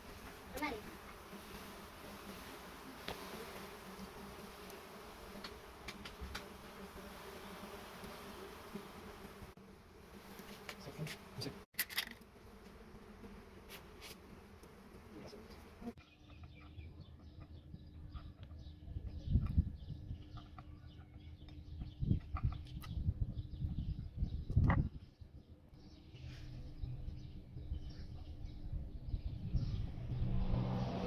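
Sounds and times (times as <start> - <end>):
bees buzzing: 0.0 - 16.0.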